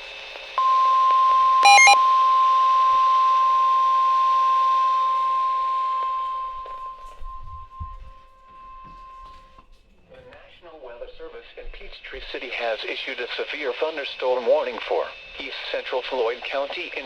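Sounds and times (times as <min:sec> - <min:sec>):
electronic beeps: 0:01.6 - 0:02.0
steady high alarm tone: 0:01.6 - 0:09.4.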